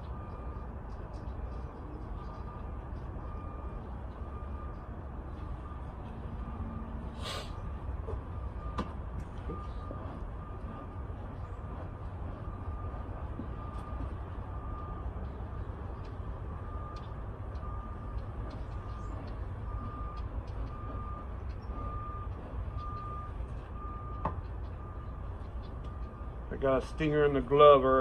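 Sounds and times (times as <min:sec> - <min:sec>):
reversing alarm beeping: 0:00.0 - 0:28.0
steady low rumble: 0:00.0 - 0:28.0.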